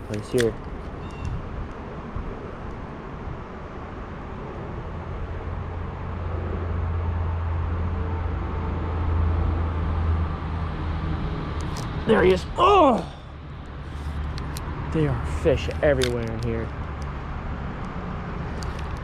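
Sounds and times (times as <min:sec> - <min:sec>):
river flowing: 0:11.9 - 0:14.4.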